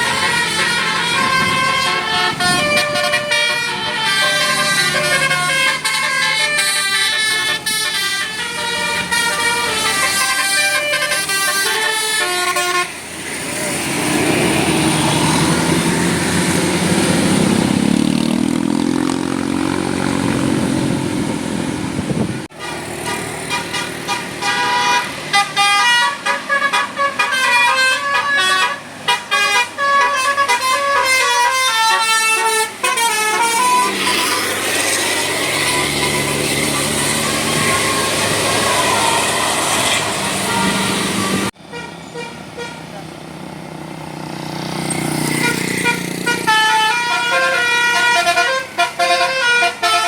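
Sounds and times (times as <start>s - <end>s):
multi-note air horn tune: 0.0s - 13.0s, 22.5s - 34.5s, 35.6s - 42.8s, 45.4s - 50.0s
bus engine passing: 0.0s - 50.0s.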